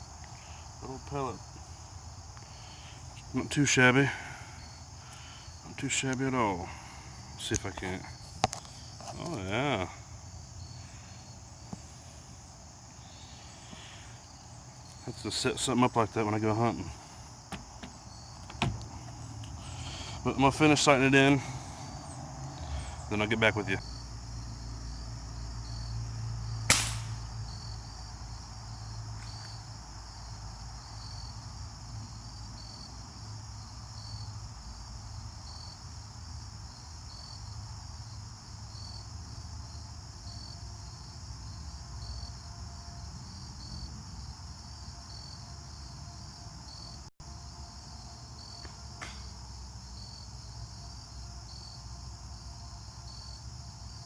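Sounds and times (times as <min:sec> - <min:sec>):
crickets chirping: 0:00.0 - 0:54.0
air rifle shot crack: 0:26.7 - 0:27.3.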